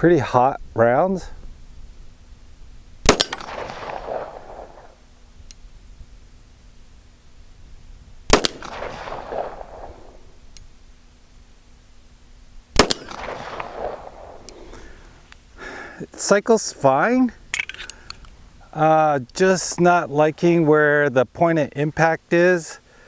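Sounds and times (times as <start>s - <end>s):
pistol shots with echo: 3.0s - 5.0s, 8.3s - 10.4s, 12.8s - 14.6s.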